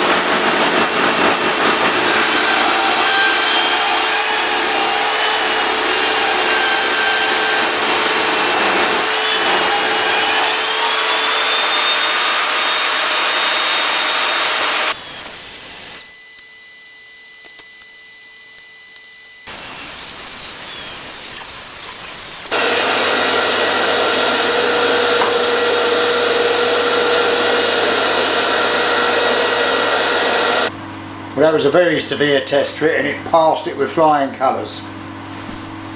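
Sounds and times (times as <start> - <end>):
saw motor winding down: 0.0 - 30.7
saw ripping a board: 0.1 - 16.2, 19.4 - 22.6.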